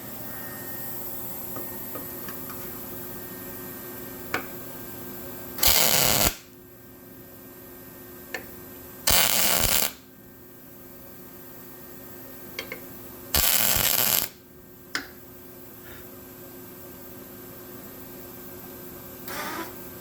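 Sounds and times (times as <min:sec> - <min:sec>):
steady hum: 0:00.0 - 0:19.2
arc welder crackling: 0:05.6 - 0:06.5, 0:09.1 - 0:10.0, 0:13.3 - 0:14.4.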